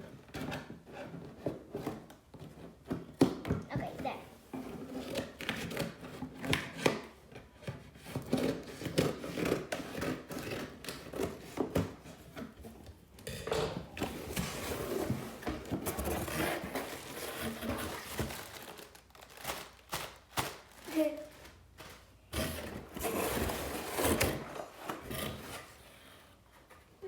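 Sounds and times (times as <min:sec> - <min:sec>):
cardboard box scraping and rustling: 0:14.0 - 0:18.8, 0:22.3 - 0:26.6.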